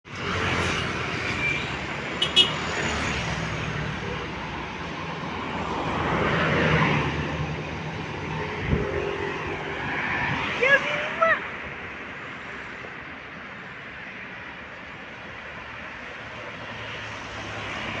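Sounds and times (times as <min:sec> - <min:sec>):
roadside traffic noise: 0:00.0 - 0:18.0.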